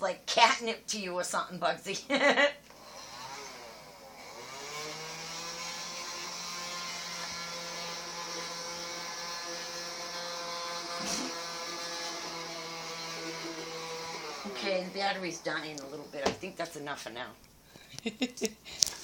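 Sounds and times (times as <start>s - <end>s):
vacuum cleaner motor whine: 2.7s - 16.5s.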